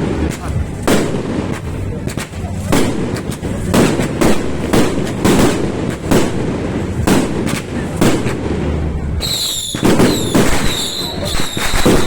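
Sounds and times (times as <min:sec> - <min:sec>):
high rocket whistles: 0:09.2 - 0:12.0.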